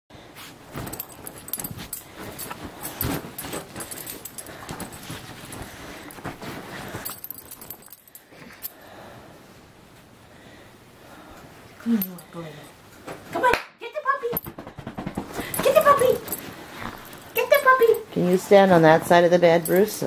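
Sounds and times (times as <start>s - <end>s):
dogs scuffling on a bed: 0.2s - 8.1s, 14.4s - 20.0s.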